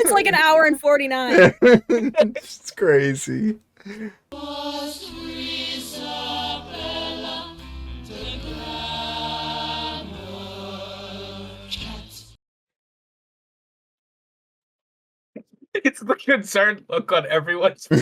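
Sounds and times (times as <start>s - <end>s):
voices singing held notes: 0.0s - 1.5s, 4.4s - 12.1s.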